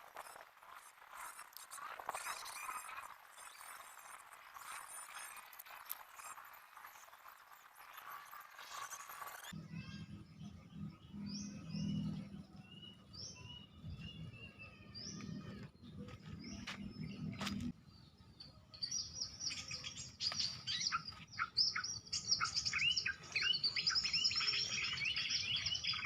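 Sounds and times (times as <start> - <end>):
small birds chirping: 0.1 - 26.0
bird call recording: 18.8 - 26.0.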